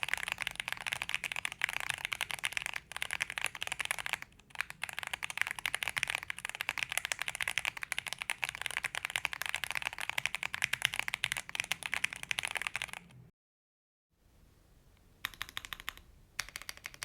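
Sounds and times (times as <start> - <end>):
mechanical keyboard typing: 0.0 - 13.2, 15.2 - 17.0.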